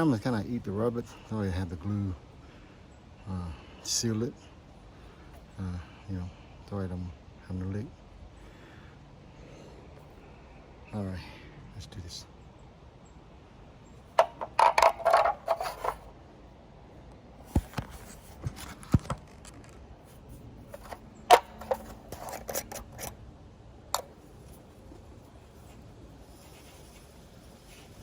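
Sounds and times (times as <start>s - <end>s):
plastic parts clicking and scraping: 14.2s - 16.1s, 17.5s - 19.8s, 20.6s - 23.2s, 23.9s - 24.6s.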